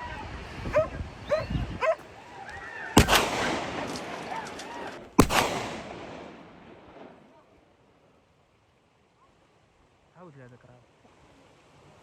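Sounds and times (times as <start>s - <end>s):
dogs yelping: 0.6s - 3.0s
gunshots ringing out: 3.0s - 7.3s.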